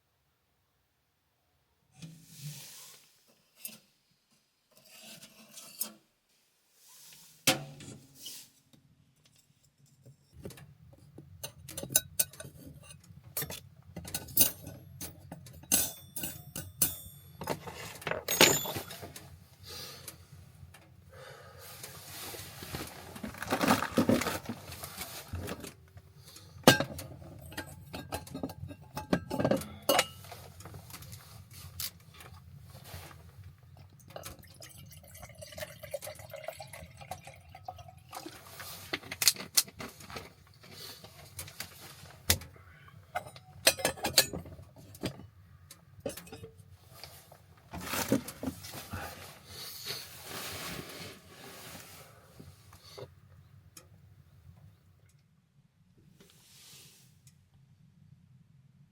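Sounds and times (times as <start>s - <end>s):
cookware clinking and clattering: 11.4s - 19.1s, 26.7s - 30.3s, 43.2s - 45.2s.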